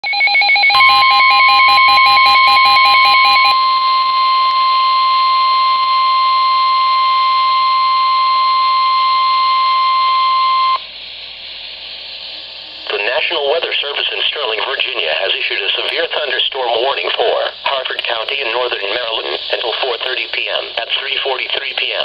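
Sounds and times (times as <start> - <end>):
rapid pulsing electronic beep: 0.0 - 5.0
steady warning alarm tone: 0.0 - 11.0.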